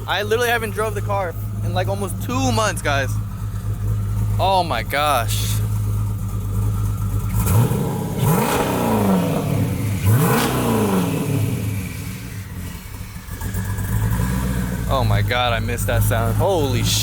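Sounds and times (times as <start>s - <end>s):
car engine idling and revving: 0.0s - 17.0s.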